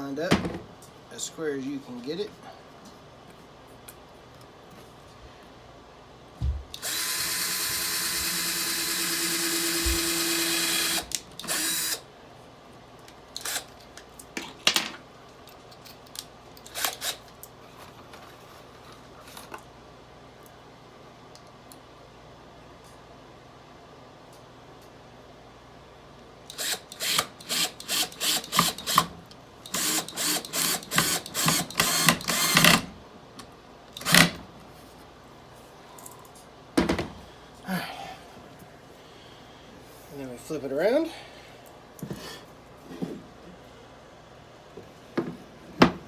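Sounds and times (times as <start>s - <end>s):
power drill drilling into wood: 6.8s - 12.0s, 26.6s - 29.1s, 29.7s - 32.9s.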